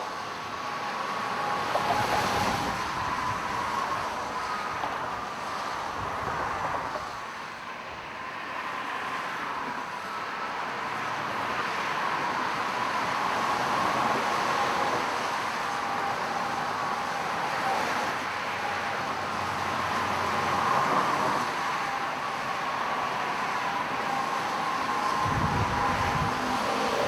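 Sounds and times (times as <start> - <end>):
passing vehicles rushing: 17.4 - 27.0
faint engine hum: 24.1 - 27.0.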